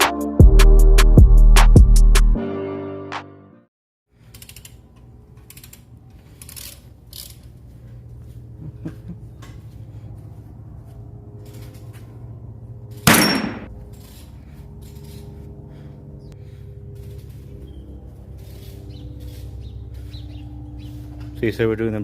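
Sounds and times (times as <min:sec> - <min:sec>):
low hum: 0:07.0 - 0:22.0.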